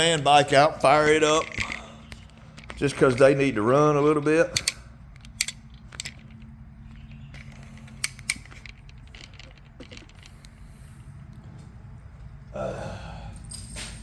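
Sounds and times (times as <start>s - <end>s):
steady low hum: 0.0s - 13.8s
light metallic clicks: 1.2s - 10.6s.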